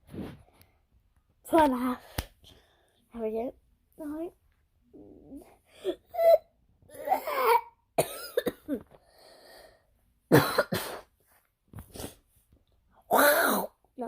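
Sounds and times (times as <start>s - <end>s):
loud cough-like bursts: 6.2s - 8.8s, 10.3s - 11.2s.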